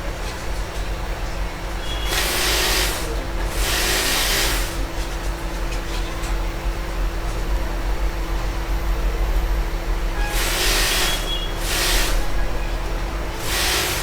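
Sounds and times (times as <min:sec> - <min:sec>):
cleaning spray hissing: 0:01.9 - 0:04.9, 0:10.3 - 0:12.4, 0:13.3 - 0:14.0.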